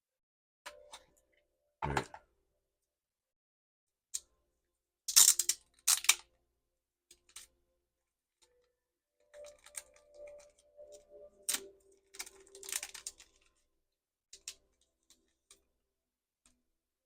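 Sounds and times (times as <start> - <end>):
card pack crinkling: 11.5 - 13.5.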